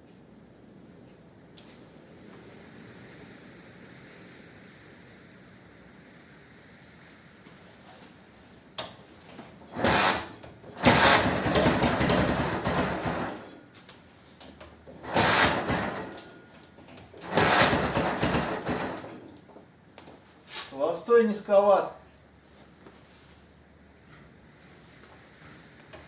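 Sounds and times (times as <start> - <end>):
motorcycle engine firing: 9.8 - 13.5, 15.0 - 16.3, 17.2 - 19.2.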